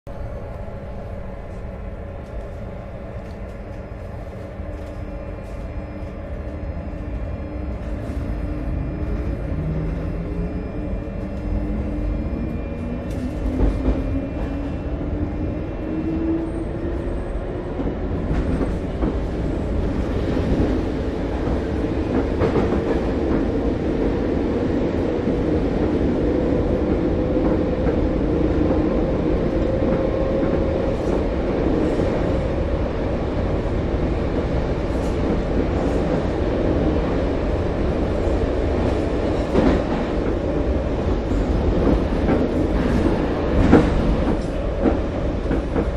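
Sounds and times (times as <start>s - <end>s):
subway train rumble: 0.0s - 45.9s
train motor whine: 0.1s - 21.9s.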